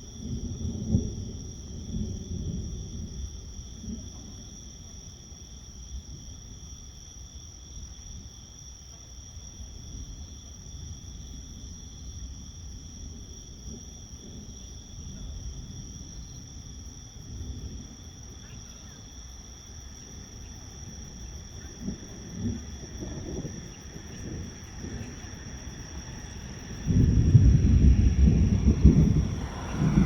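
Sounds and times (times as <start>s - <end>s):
insects chirring: 0.0s - 30.0s
distant thunder rumbling: 0.1s - 4.6s, 12.5s - 30.0s.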